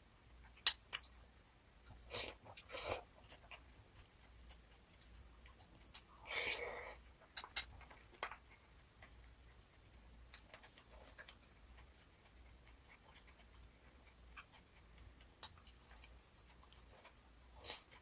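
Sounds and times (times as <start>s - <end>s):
low room hum: 0.0s - 18.0s.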